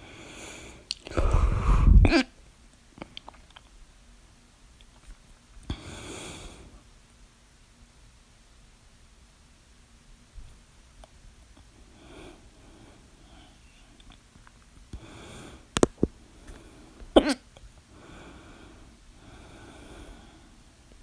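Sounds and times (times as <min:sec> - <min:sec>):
audible breathing: 0:00.0 - 0:02.2, 0:14.9 - 0:17.2, 0:17.9 - 0:20.7
person hiccuping: 0:02.0 - 0:02.3, 0:17.2 - 0:17.5.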